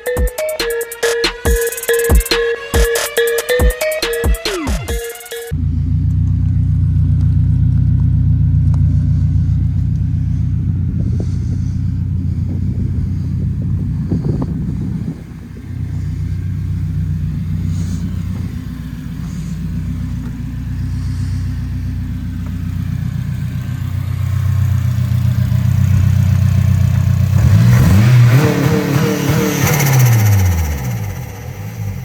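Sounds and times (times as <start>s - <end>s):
car engine idling and revving: 5.4s - 32.0s.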